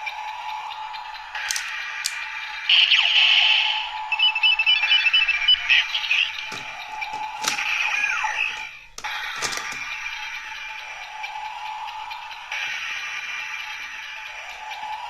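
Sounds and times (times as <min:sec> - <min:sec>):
toy electronic sound effects: 0:01.0 - 0:11.4
sharp plastic clicks: 0:01.4 - 0:02.2, 0:06.4 - 0:07.8, 0:08.9 - 0:09.9
short electronic beeps: 0:04.1 - 0:06.4.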